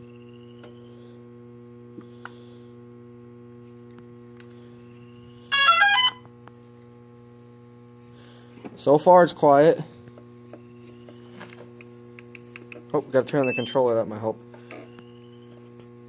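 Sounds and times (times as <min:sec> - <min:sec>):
steady low hum: 0:00.0 - 0:16.0
electronic beep tones: 0:13.4 - 0:14.0.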